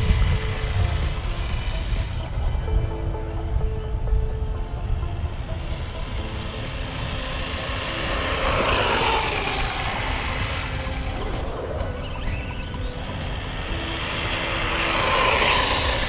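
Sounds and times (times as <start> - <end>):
rc truck motor whining: 0.0 - 2.6, 5.1 - 16.0
wind rumble on microphone: 0.0 - 16.0.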